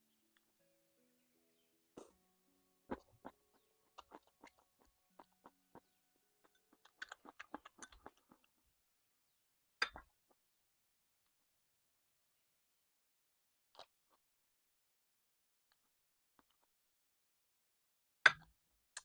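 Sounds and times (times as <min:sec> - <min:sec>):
crunchy chewing: 0:02.9 - 0:08.5.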